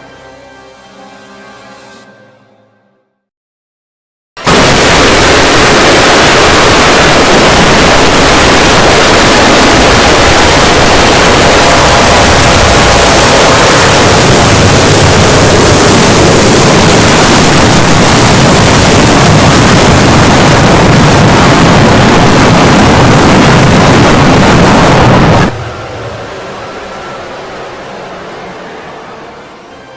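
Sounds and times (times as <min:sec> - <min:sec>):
distorted harsh noise blast: 0:04.4 - 0:29.9.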